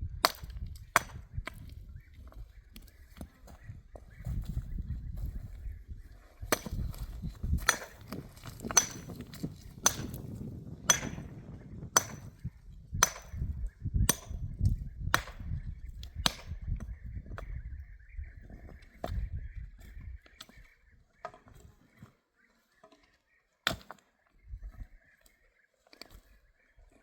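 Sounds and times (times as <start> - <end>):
hand tool striking metal: 7.6 - 10.2, 10.9 - 11.3, 12.0 - 12.3.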